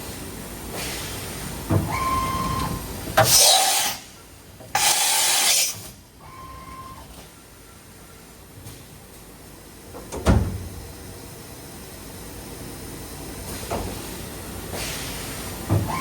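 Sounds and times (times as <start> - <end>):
compressed-air hiss: 3.3 - 4.0, 4.7 - 5.9.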